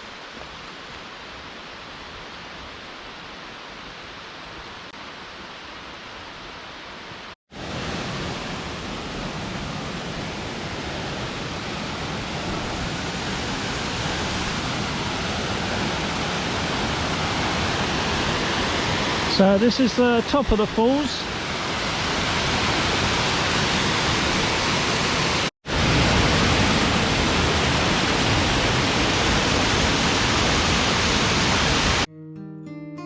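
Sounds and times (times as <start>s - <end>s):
waterfall rushing: 7.6s - 32.1s.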